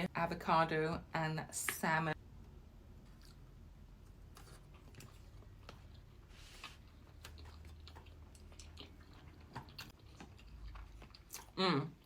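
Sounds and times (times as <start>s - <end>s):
chewing sushi: 3.0s - 12.0s.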